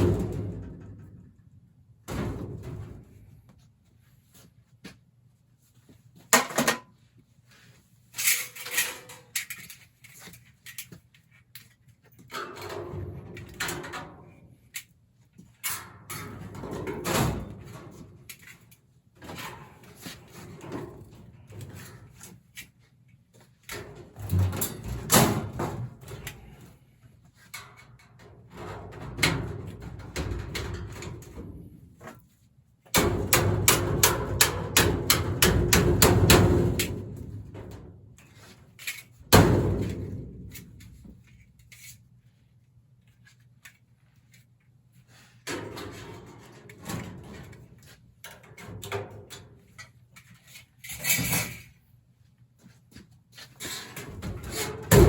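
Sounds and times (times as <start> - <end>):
metal parts and tools clattering: 6.4 - 7.0, 8.1 - 14.9, 38.2 - 42.1, 45.5 - 51.8.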